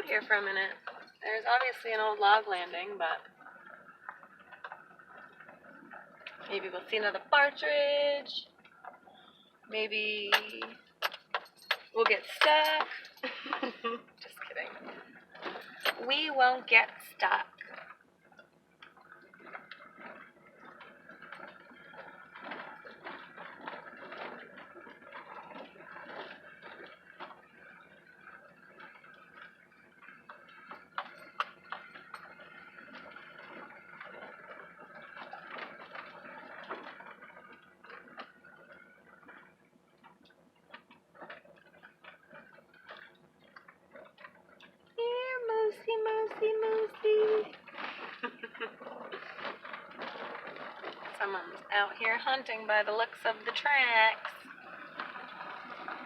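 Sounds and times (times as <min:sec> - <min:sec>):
tyres crunching on dirt trail: 0:10.1 - 0:56.0
loose gear rattling: 0:10.2 - 0:16.3.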